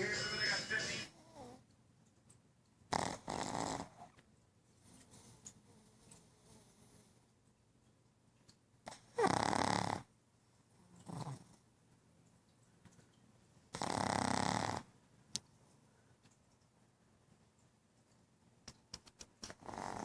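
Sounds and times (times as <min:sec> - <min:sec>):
dog snoring: 0:00.2 - 0:01.6, 0:02.9 - 0:04.2, 0:08.8 - 0:10.1, 0:10.9 - 0:11.6, 0:13.7 - 0:14.9, 0:19.6 - 0:20.0.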